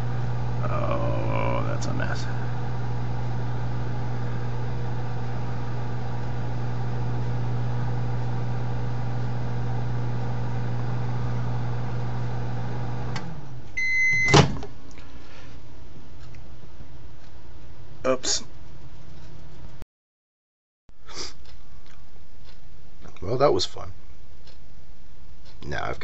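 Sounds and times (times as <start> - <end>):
microwave oven humming: 0.0 - 18.0
short beep: 13.8 - 14.4.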